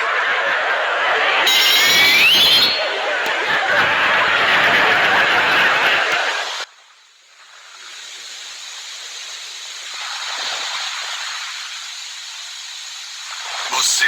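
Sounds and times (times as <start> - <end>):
steady rushing hiss: 6.2 - 14.0.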